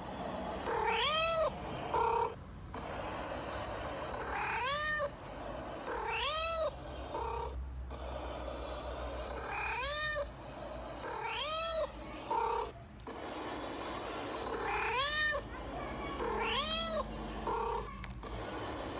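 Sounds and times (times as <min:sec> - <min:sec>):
cat meowing: 0:00.6 - 0:03.0, 0:04.0 - 0:05.2, 0:05.8 - 0:08.1, 0:09.2 - 0:10.3, 0:11.0 - 0:12.8, 0:14.3 - 0:18.6.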